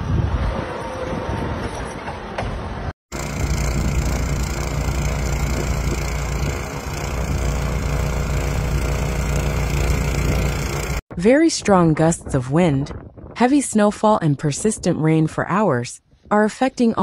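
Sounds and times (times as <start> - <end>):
rough outdoor noise: 0.6 - 11.4.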